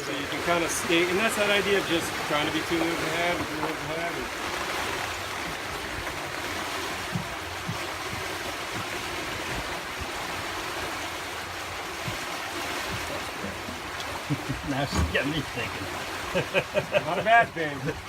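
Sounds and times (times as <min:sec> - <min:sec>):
water rushing along hull: 0:00.0 - 0:18.0
wind: 0:00.0 - 0:18.0
faint low thumps: 0:07.0 - 0:09.8.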